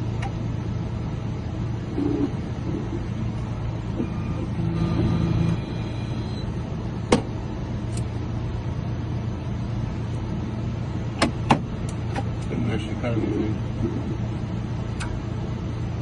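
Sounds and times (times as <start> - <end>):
higher whine: 0.0 - 10.6
key-cutting machine motor hum: 4.0 - 6.5.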